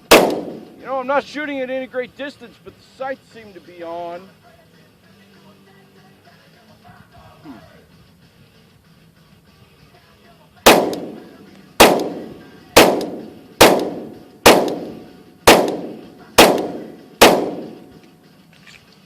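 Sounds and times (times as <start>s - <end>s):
pistol shots echoing: 0.0s - 0.9s, 10.6s - 18.0s.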